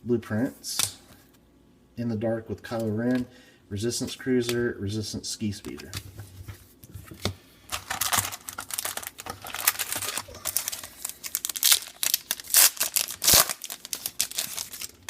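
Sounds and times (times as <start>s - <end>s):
wrapper tearing and crinkling: 7.7s - 15.0s.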